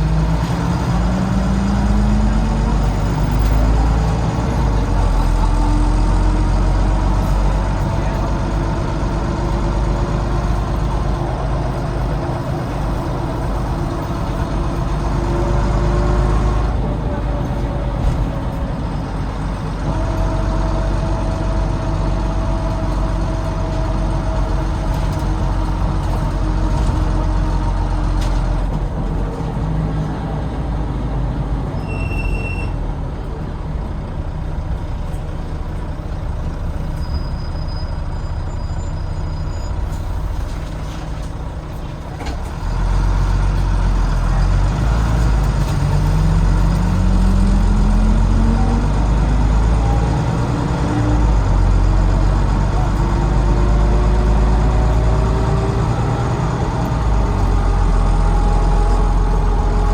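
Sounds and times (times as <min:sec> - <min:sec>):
bus diesel engine rumbling: 0:00.0 - 0:59.9
short high beep: 0:31.8 - 0:32.7.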